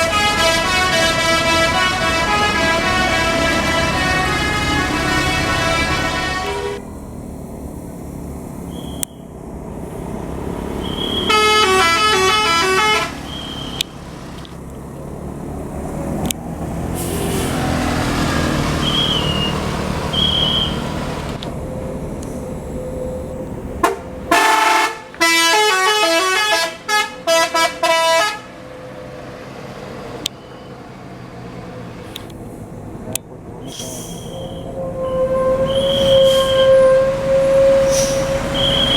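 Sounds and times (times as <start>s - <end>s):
multi-note bus horns: 0.0s - 7.0s, 10.7s - 14.0s, 16.9s - 21.5s, 23.7s - 29.2s, 33.7s - 38.9s
vehicle engine: 0.0s - 38.9s.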